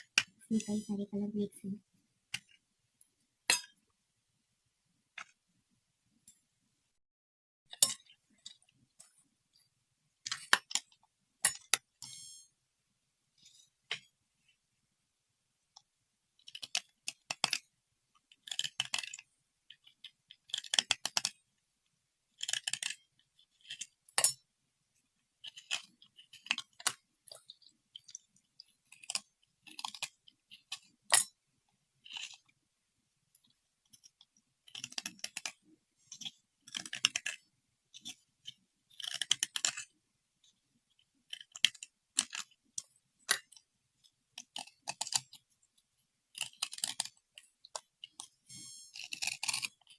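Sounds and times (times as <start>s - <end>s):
crisp crunching and clicking: 22.4s - 24.0s, 25.4s - 31.0s, 33.4s - 39.9s, 41.0s - 43.6s, 44.3s - 45.5s, 46.3s - 49.9s.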